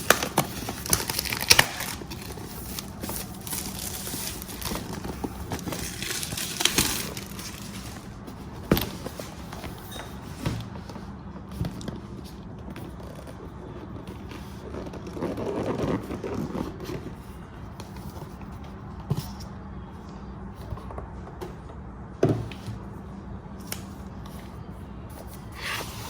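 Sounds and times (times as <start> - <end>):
packaging rustling scrape: 0.0 - 10.9
steady low hum: 0.0 - 26.0.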